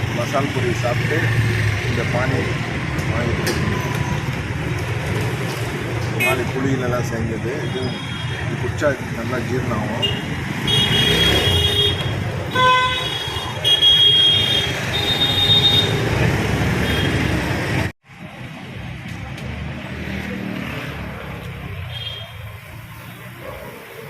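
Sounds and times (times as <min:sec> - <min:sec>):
busy road traffic: 0:00.0 - 0:24.0
vehicle horn toots: 0:10.0 - 0:16.0.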